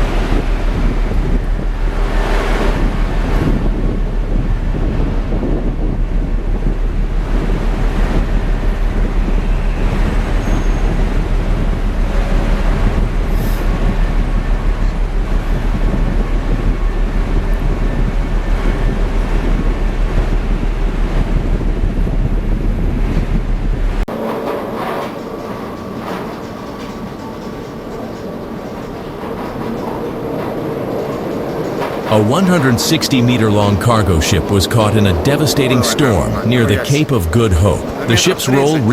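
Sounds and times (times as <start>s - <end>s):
wind buffeting microphone: 0.0s - 24.5s.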